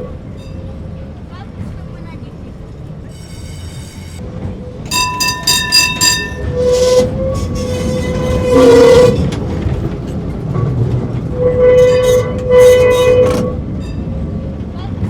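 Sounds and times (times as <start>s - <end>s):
tram running past: 0.0s - 15.0s
tram bell ringing: 3.1s - 15.0s.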